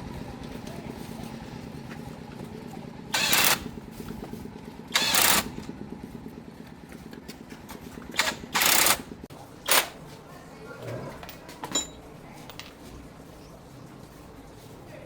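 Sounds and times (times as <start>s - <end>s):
tractor engine idling: 0.0s - 10.3s.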